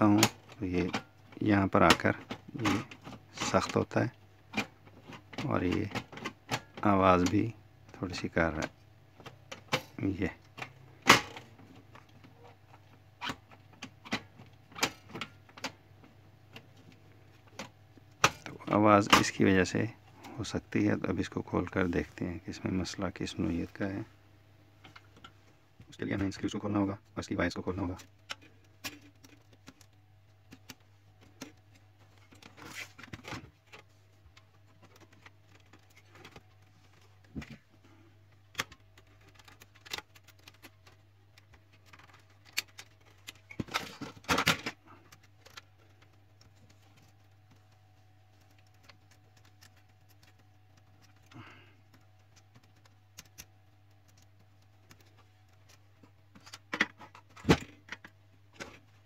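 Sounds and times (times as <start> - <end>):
clicks and rattles of printer parts: 0.0 - 21.8, 26.0 - 59.0.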